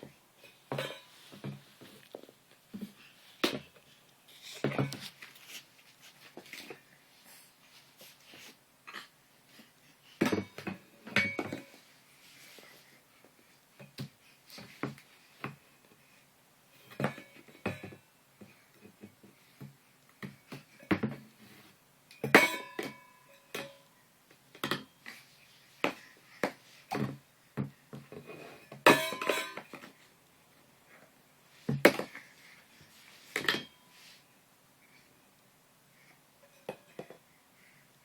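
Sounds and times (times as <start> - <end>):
knocks and clinks of hard objects: 10.2 - 11.8, 22.2 - 23.9, 28.0 - 29.9.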